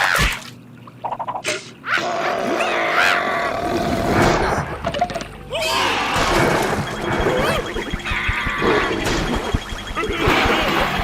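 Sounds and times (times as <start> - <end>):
comic sound effects: 5.6 - 11.0.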